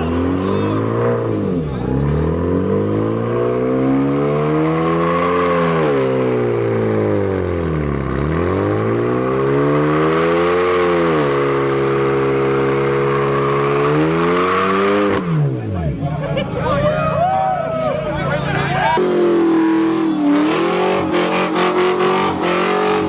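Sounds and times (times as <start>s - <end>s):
car engine revving: 0.0s - 16.4s, 18.2s - 23.0s.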